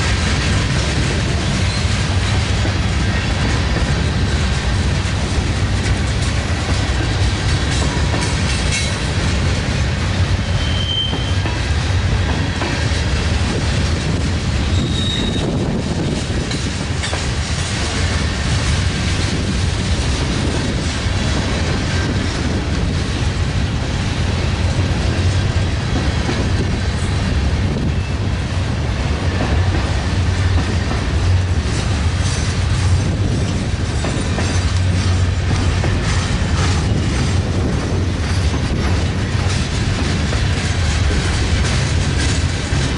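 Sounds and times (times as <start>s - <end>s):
freight train rumbling past: 0.0s - 42.9s
wheels squealing: 10.4s - 11.4s, 14.6s - 15.6s.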